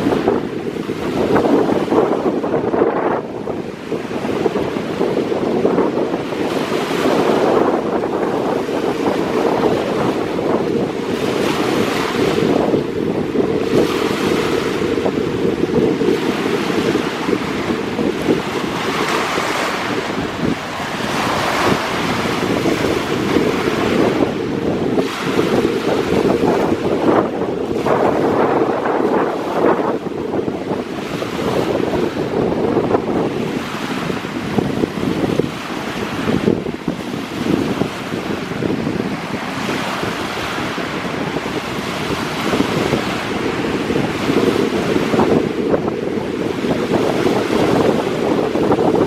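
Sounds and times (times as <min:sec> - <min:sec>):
waves breaking on shore: 0:00.0 - 0:49.0
wind buffeting microphone: 0:00.0 - 0:49.0.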